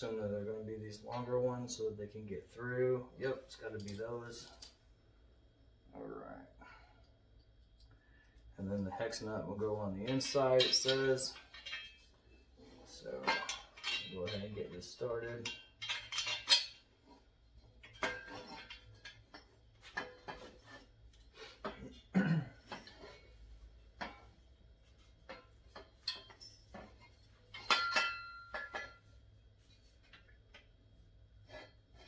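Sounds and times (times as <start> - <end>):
metal parts clinking and knocking: 3.8 - 4.8, 10.0 - 12.2, 13.1 - 20.8, 24.0 - 30.8
ringing metal clank: 27.5 - 29.1.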